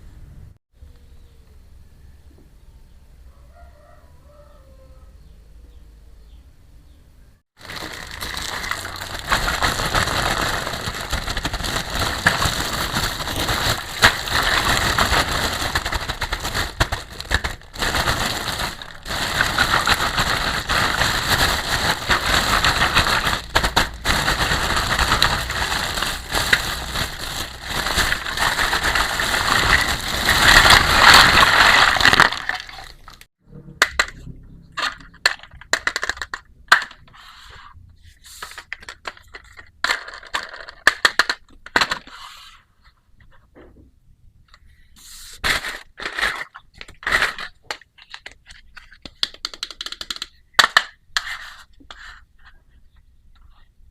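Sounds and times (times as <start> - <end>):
plastic packaging crinkling: 7.6 - 33.3.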